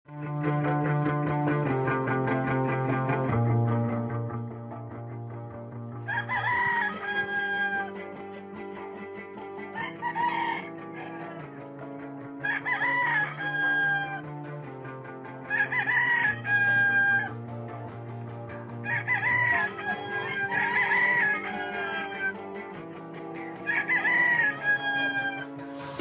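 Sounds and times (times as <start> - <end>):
background music: 0.1 - 26.0
roosters crowing: 6.0 - 8.2, 9.7 - 11.7, 12.4 - 14.3, 15.4 - 17.4, 18.8 - 22.7, 23.5 - 26.0.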